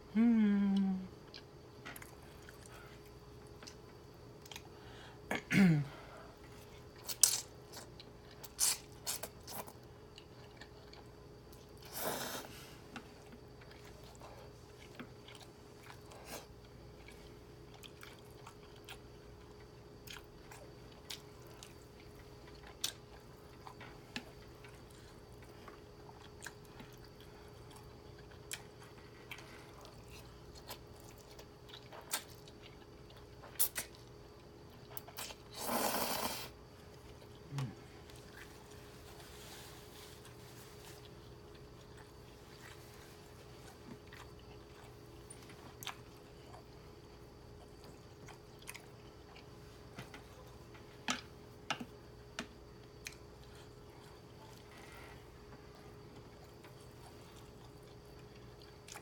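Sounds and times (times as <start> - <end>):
wet chewing and mouth smacks: 56.1 - 59.0.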